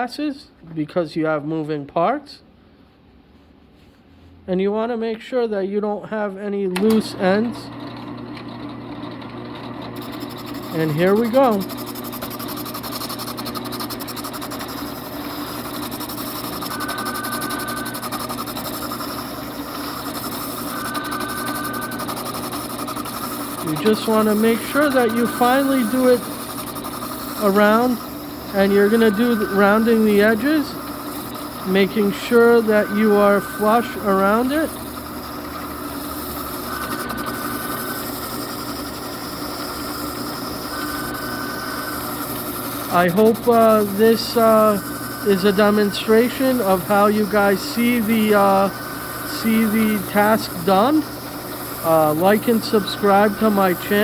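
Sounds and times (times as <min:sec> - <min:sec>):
drill press motor hum: 0:06.8 - 0:54.0
wood sanding against drum: 0:10.0 - 0:54.0
high whine: 0:16.4 - 0:39.0.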